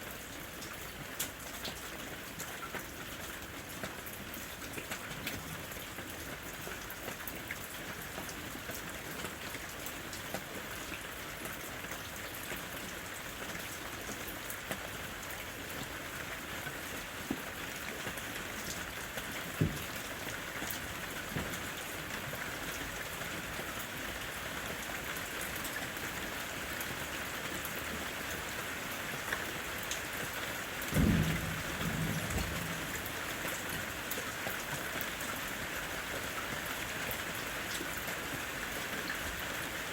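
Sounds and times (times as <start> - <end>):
steady rain: 0.0 - 39.9
low rumble of thunder: 30.9 - 34.1.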